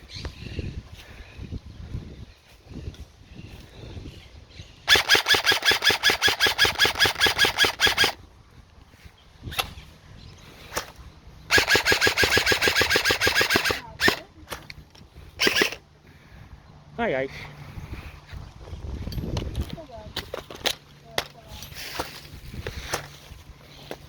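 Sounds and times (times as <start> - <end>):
airsoft rifle bursts: 4.8 - 8.2, 11.5 - 14.7, 15.4 - 15.8
airsoft rifle single shots: 11.5 - 14.6.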